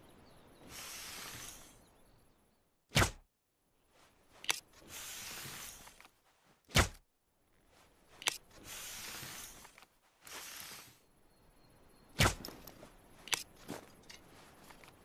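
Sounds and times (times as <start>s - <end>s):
arrow whooshing: 2.9s - 3.2s.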